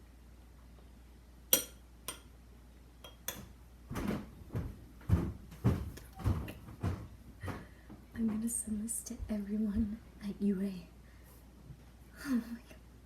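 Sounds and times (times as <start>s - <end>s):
dull knocks and thumps: 3.9s - 8.5s.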